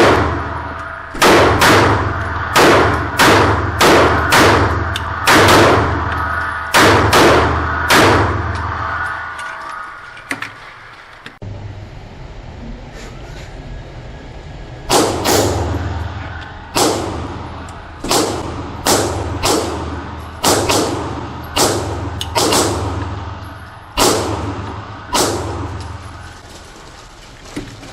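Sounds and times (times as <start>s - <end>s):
pistol shots: 0.0s - 0.6s, 1.2s - 8.6s, 14.9s - 15.9s, 16.7s - 23.2s, 24.0s - 26.2s.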